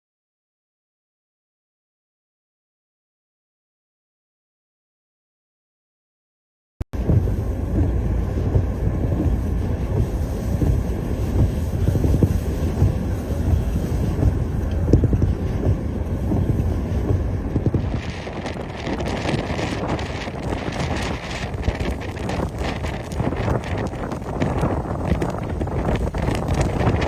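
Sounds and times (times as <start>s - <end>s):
blizzard wind buffeting microphone: 7.0s - 27.0s.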